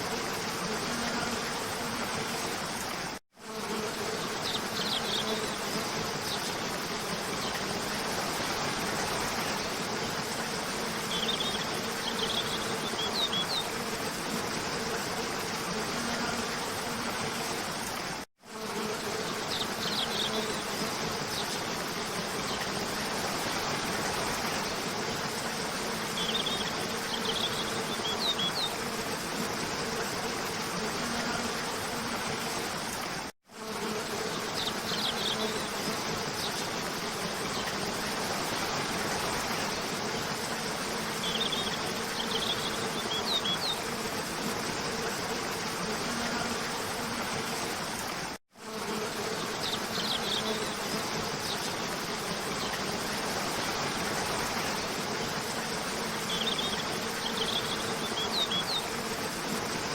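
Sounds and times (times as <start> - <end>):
faint steady buzz: 0.0 - 59.9.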